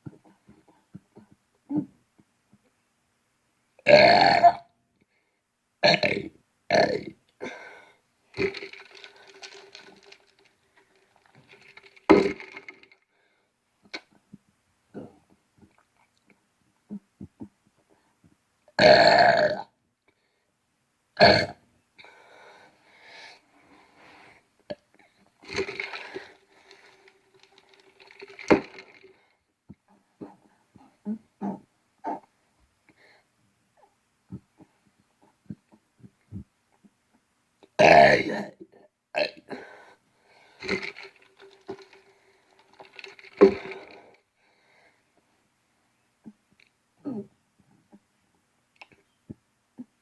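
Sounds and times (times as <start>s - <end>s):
person burping: 3.8s - 4.7s, 5.8s - 7.6s, 8.4s - 10.2s, 11.5s - 12.9s, 18.8s - 19.7s, 21.2s - 21.6s, 25.4s - 27.0s, 27.8s - 29.0s, 37.8s - 38.6s, 39.2s - 39.6s, 40.6s - 41.9s, 42.9s - 44.1s.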